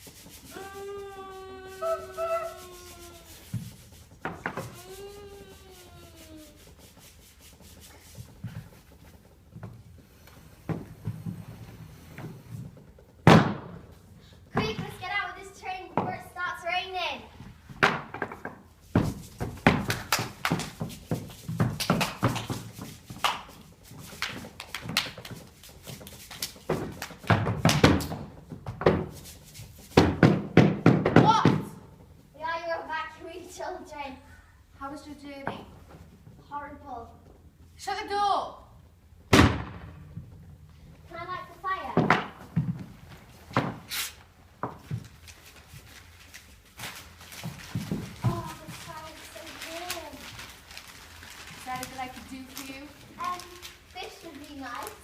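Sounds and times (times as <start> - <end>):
sandpaper rubbing rhythmically: 0.0 - 9.4, 18.8 - 28.2, 28.9 - 30.8
irregular thuds and knocks: 17.7 - 22.8, 30.0 - 31.8, 41.9 - 43.9.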